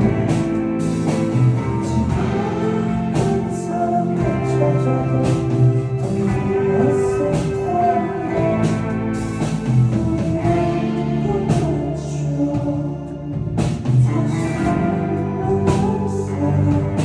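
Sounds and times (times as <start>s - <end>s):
drum kit: 0.0s - 17.0s
guitar chords: 0.0s - 17.0s
person singing: 0.0s - 17.0s.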